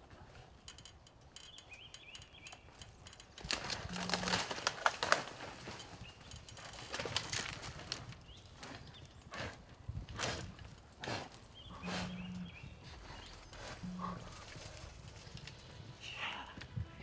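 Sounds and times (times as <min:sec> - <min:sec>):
dry sticks and leaves crackling: 0:00.7 - 0:08.8, 0:13.3 - 0:16.7.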